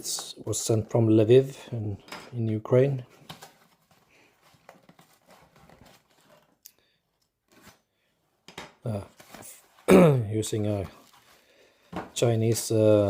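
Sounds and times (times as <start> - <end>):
packaging scraping and rustling: 3.2 - 6.6.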